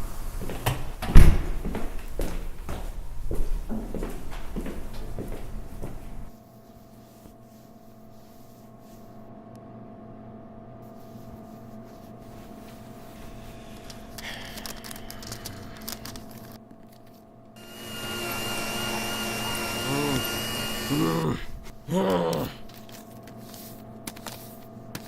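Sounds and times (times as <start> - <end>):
motor-driven machine hiss and whine: 17.6 - 21.4.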